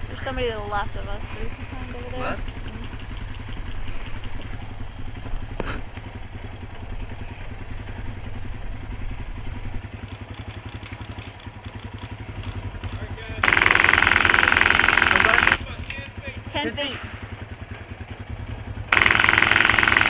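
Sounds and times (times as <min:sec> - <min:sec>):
atv engine puttering: 0:11.9 - 0:16.2, 0:17.7 - 0:20.0
sharp click: 0:12.4 - 0:16.0.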